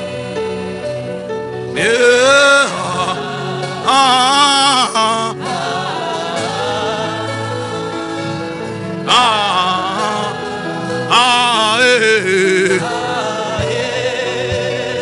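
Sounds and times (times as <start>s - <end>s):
person singing: 1.7s - 7.5s, 9.0s - 15.0s.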